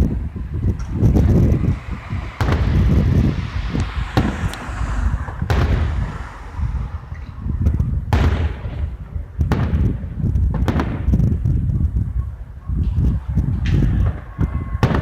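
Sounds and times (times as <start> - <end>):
continuous low rumble: 0.0 - 15.0
firework shells booming: 0.4 - 11.5.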